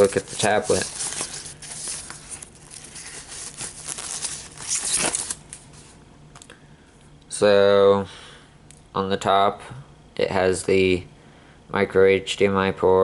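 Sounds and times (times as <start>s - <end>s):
plastic packaging crinkling: 0.0s - 5.9s.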